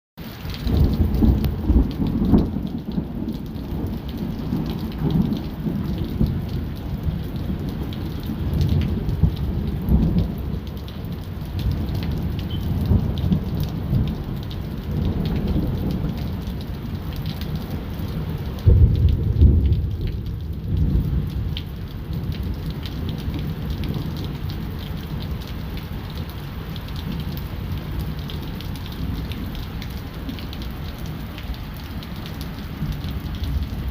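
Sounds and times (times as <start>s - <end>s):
steady rain: 0.2s - 33.9s
rolling thunder: 0.6s - 17.8s, 18.4s - 25.7s.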